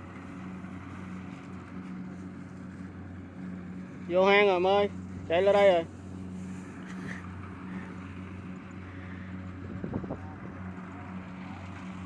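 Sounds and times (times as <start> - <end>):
combine harvester diesel engine: 0.0 - 12.0.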